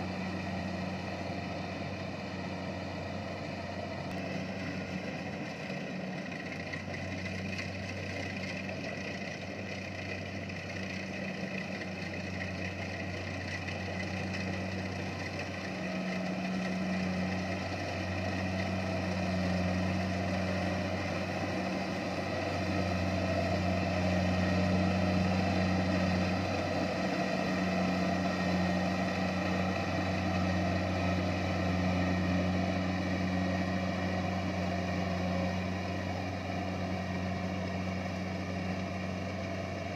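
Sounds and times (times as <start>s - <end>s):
harvester engine humming: 0.0s - 39.9s.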